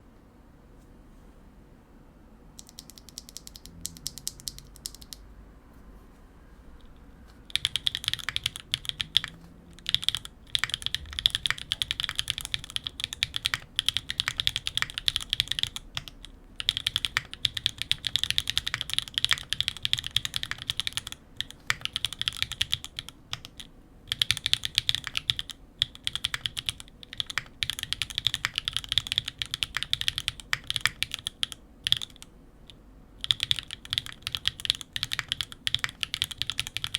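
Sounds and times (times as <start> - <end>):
typing on mechanical keyboard: 2.6 - 5.2, 7.4 - 36.9.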